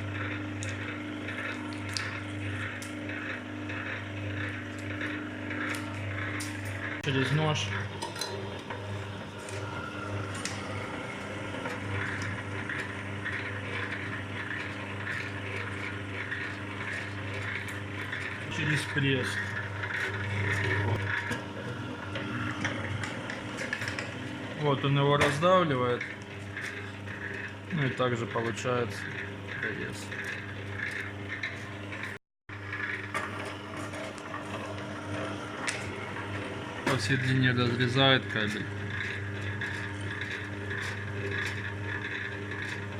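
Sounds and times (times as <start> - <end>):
cable scraping and crackling: 0.0 - 42.9
machine motor humming: 0.0 - 42.9.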